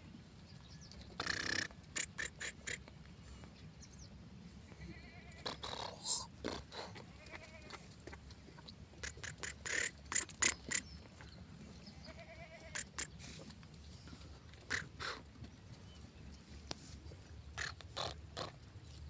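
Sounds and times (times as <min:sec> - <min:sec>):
goats bleating: 0:07.0 - 0:07.8, 0:12.1 - 0:13.0.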